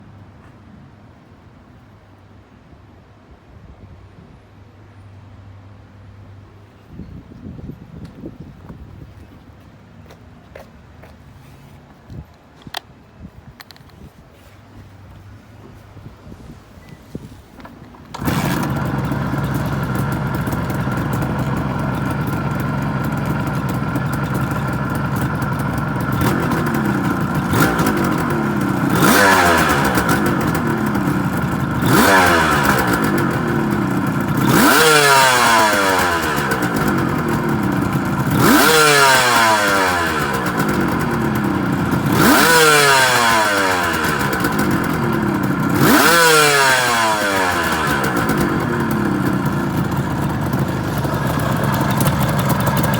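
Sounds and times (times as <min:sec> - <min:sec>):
motorcycle engine idling and revving: 0:14.8 - 0:52.9.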